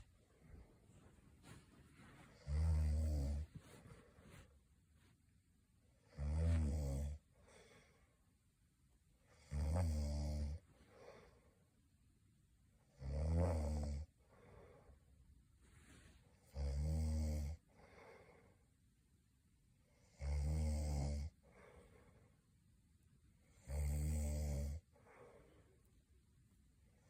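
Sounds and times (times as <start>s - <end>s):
quiet breathing: 0.0s - 8.5s, 9.2s - 12.0s, 13.8s - 18.9s, 21.0s - 27.0s
person snoring: 2.3s - 3.5s, 6.1s - 7.2s, 9.4s - 10.6s, 13.0s - 14.1s, 16.4s - 18.0s, 20.1s - 21.3s, 23.6s - 25.2s.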